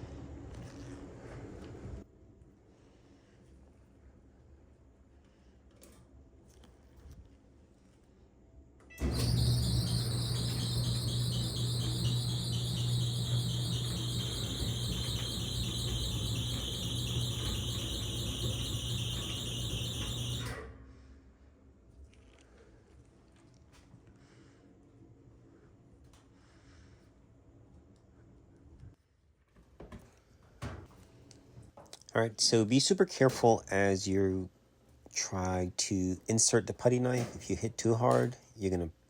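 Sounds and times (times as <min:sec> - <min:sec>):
dryer squealing: 0:08.9 - 0:20.7
low motor hum: 0:09.0 - 0:20.6.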